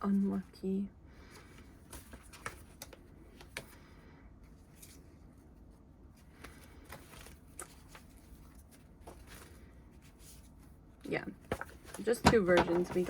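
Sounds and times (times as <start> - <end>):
paper rustling: 1.3 - 3.9, 4.5 - 13.0.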